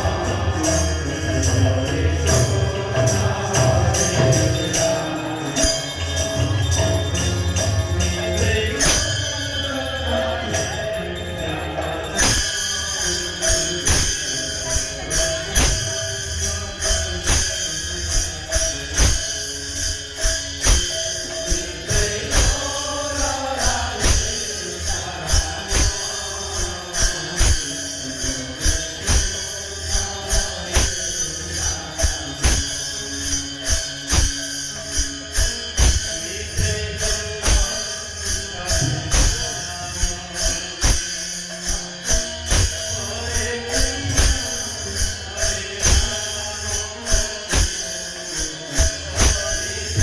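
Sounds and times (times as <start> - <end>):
jingling metal percussion: 0.0 - 50.0
drum beat: 15.6 - 15.9, 20.2 - 24.4, 29.0 - 29.4, 30.7 - 31.0, 32.0 - 32.8, 33.7 - 34.4, 35.4 - 36.2, 38.7 - 40.2, 42.1 - 42.8, 47.1 - 47.8.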